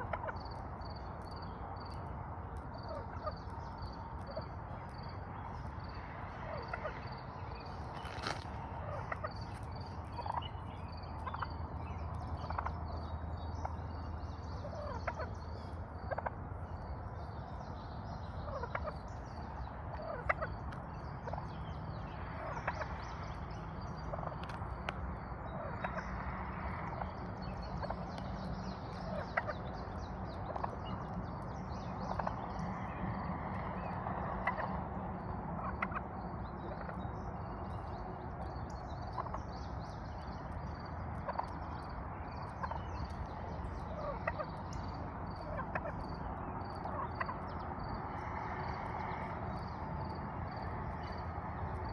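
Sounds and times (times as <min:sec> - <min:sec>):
poultry clucking: 0:12.4 - 0:12.7, 0:45.3 - 0:46.0.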